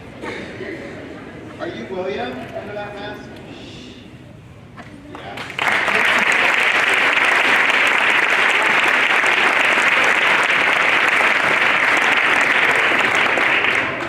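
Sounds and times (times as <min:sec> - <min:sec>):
audience applauding: 0:05.3 - 0:14.0.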